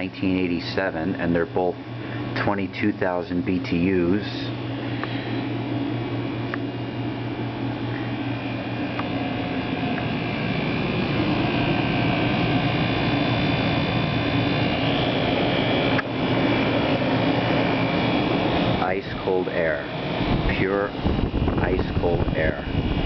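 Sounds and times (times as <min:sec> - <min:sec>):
air conditioner blowing air: 0:00.0 - 0:23.0.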